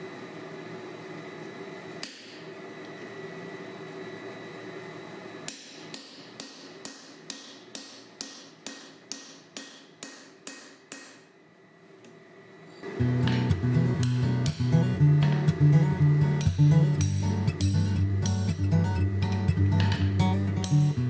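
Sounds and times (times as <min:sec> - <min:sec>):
steady background hum: 0:00.0 - 0:21.0
hammer ringing on anvil: 0:05.5 - 0:11.4.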